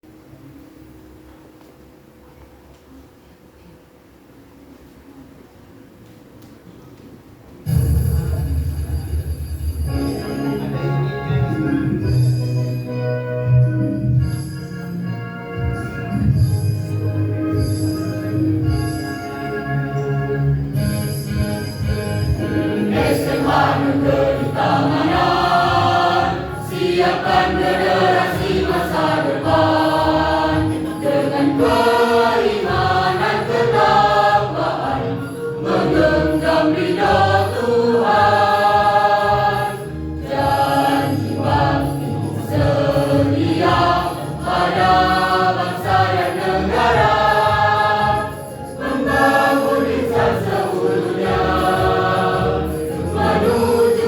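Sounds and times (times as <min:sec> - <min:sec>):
choir singing a march: 0:22.2 - 0:54.0.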